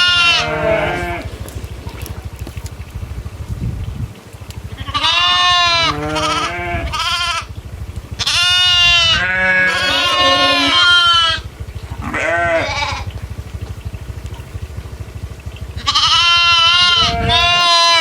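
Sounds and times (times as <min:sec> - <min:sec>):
goats bleating: 0:00.0 - 0:02.4, 0:04.6 - 0:07.5, 0:08.1 - 0:14.5, 0:15.6 - 0:18.0
steady low hum: 0:00.0 - 0:18.0.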